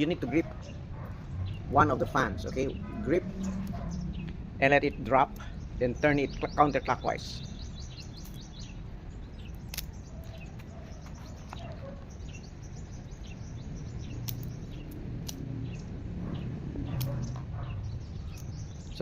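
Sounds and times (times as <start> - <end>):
outdoor background rumble: 0.0 - 19.0
sharp clicks: 9.5 - 10.7, 14.2 - 15.8, 16.8 - 17.5.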